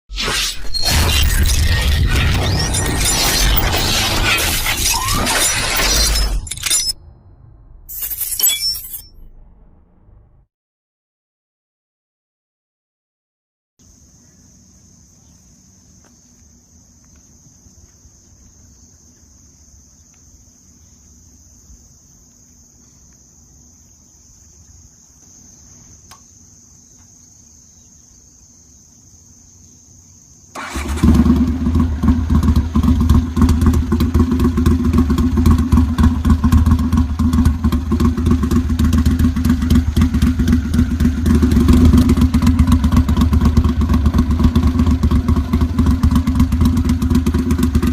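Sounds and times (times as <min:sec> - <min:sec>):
motorcycle engine running loudly: 0:30.6 - 0:47.9.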